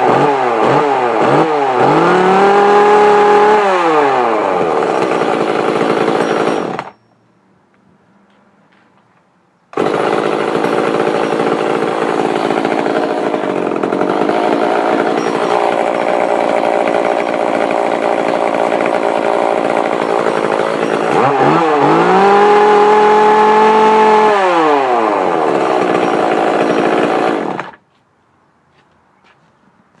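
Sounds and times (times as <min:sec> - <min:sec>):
chainsaw running and revving: 0:00.0 - 0:06.9, 0:09.8 - 0:27.8.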